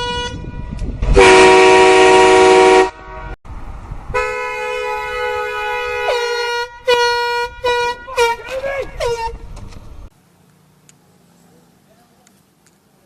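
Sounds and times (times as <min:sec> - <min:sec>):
air horn blasts: 0:00.0 - 0:03.4, 0:04.1 - 0:09.5.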